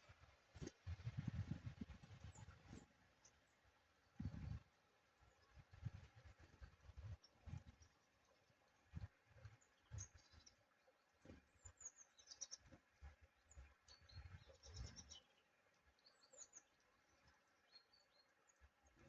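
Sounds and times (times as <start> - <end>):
small birds chirping: 0.0 - 19.0.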